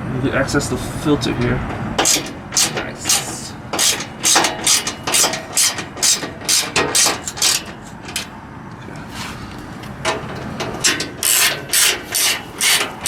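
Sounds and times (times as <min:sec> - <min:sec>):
ratchet wrench clicking: 0:02.0 - 0:08.3, 0:09.9 - 0:13.0.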